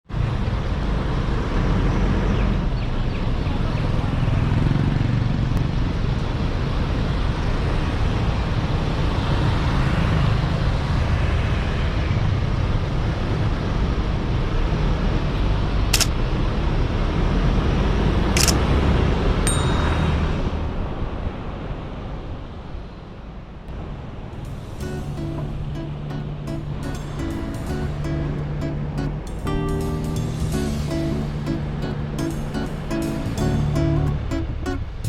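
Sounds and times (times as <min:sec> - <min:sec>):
sharp click: 0:18.4 - 0:18.6
car driving on road: 0:23.7 - 0:35.0.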